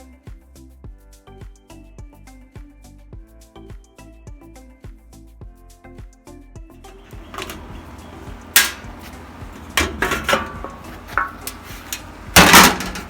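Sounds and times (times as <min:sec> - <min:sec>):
metal clanks and clicks: 0:06.9 - 0:13.0.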